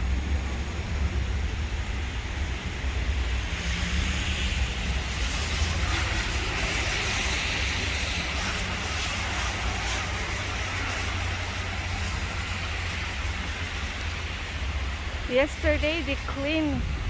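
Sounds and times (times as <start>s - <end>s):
traffic on wet street: 0.0s - 17.0s
wind buffeting microphone: 4.6s - 17.0s.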